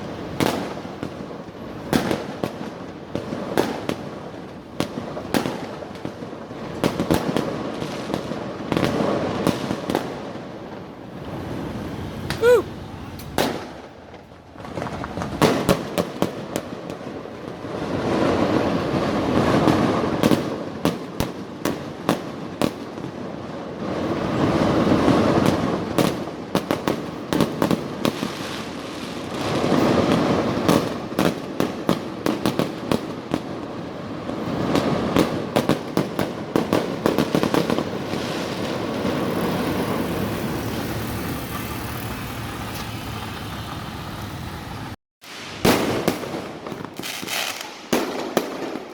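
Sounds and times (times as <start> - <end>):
fireworks bangs and pops: 0.0 - 43.3, 45.2 - 48.9
rushing crackling noise: 37.8 - 45.0.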